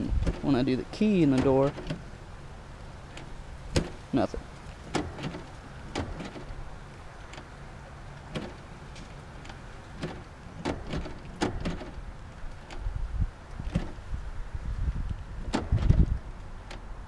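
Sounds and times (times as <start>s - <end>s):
car door lock clicks: 0.1s - 0.6s, 1.2s - 2.2s, 3.0s - 4.1s, 4.8s - 7.6s, 8.2s - 14.1s, 15.4s - 16.9s.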